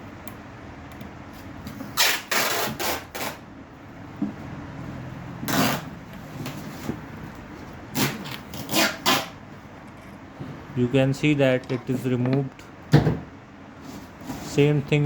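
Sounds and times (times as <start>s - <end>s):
steady low hum: 0.0s - 15.0s
allen key scraping and clinking metal: 9.8s - 10.2s.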